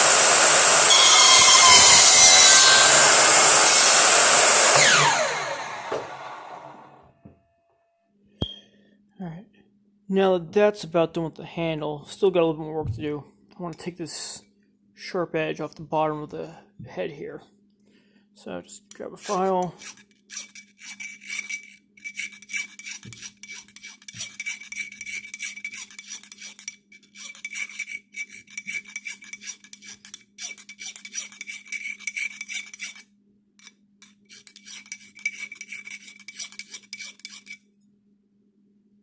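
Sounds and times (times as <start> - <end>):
hand file rasping on steel: 18.9 - 37.6.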